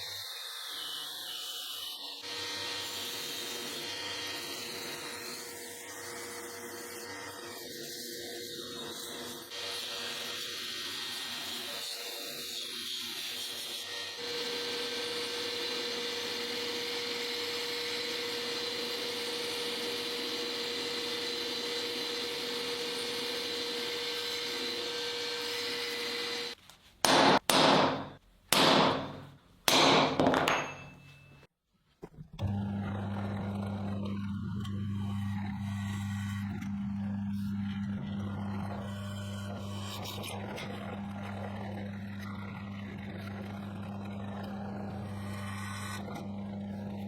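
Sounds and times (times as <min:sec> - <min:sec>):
low motor hum: 0:32.2 - 0:47.0
machine whine: 0:32.3 - 0:47.0.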